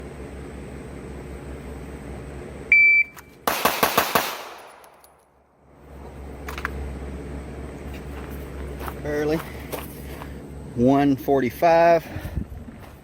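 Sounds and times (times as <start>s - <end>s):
shot timer beep: 2.7s - 3.2s
rapid pistol shots: 3.4s - 4.9s.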